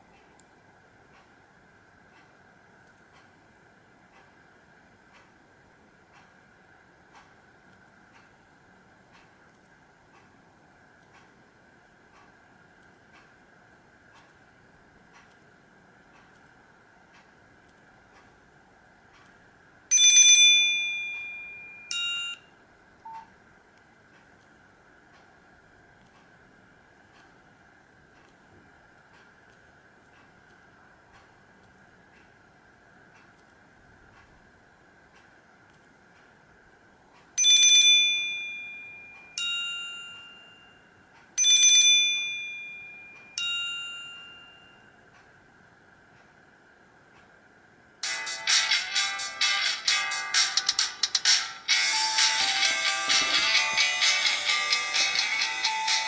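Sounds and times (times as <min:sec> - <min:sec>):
bell-like phone alert chime: 0:19.9 - 0:22.5, 0:37.4 - 0:40.8, 0:41.4 - 0:44.9, 0:51.7 - 0:56.0
faint short beep: 0:22.0 - 0:23.3.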